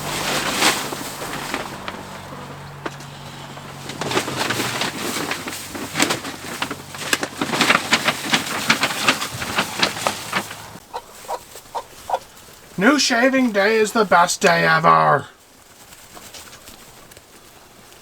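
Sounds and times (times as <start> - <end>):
wood shavings rustling: 0.0 - 10.8.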